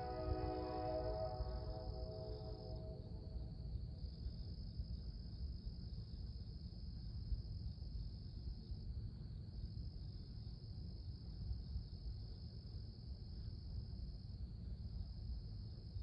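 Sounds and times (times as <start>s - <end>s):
low noisy rumble: 0.0s - 11.9s
crickets chirping: 0.0s - 16.0s.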